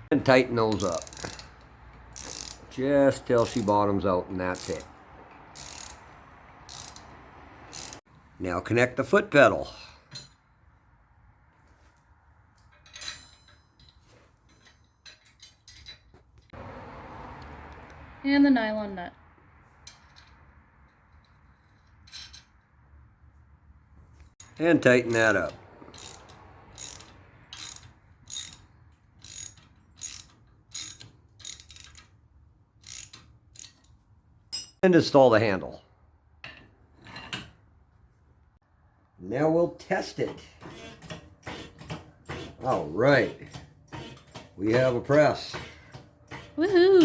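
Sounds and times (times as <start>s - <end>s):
ratchet wrench clicking: 0.7s - 2.7s, 3.4s - 3.8s, 4.5s - 4.9s, 5.5s - 8.0s, 24.4s - 32.2s, 32.8s - 34.0s
metal parts clinking: 12.5s - 16.2s, 19.9s - 22.6s, 26.0s - 32.2s.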